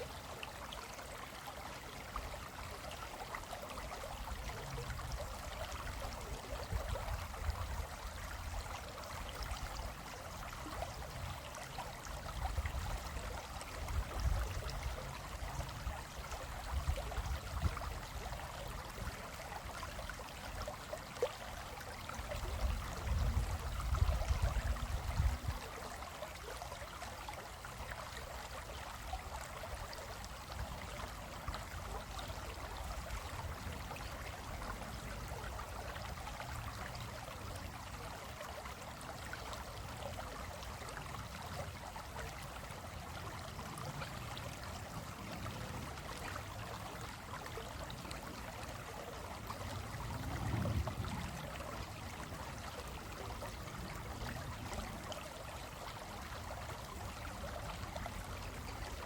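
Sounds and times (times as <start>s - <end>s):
stream running over rocks: 0.0s - 59.0s.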